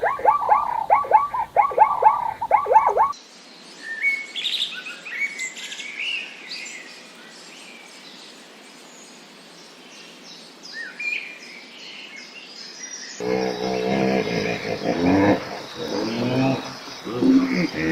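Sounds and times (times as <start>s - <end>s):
small birds chirping: 0.0s - 4.5s, 9.0s - 17.9s
steady background hiss: 0.0s - 17.9s.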